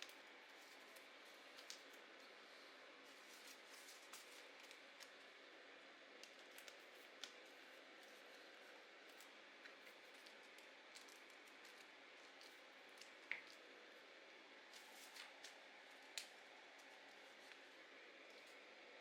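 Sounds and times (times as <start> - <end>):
paper handling clicks and taps: 0.0 - 2.0.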